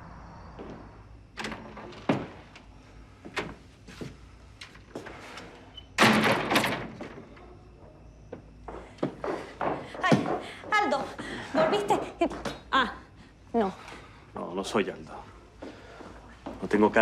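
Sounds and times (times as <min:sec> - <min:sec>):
loud door rattle: 0:06.0 - 0:07.3.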